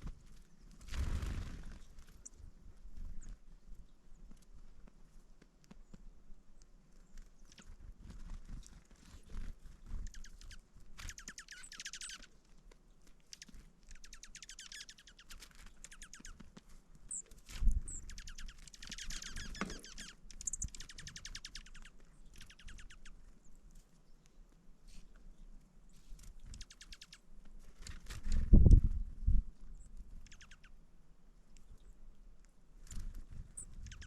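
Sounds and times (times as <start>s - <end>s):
songbirds trilling: 9.3s - 12.4s, 13.3s - 16.4s, 17.1s - 24.3s, 26.4s - 27.3s, 29.8s - 30.8s, 33.5s - 34.0s
high bird chips: 10.1s - 12.3s, 13.2s - 16.4s, 17.9s - 23.1s.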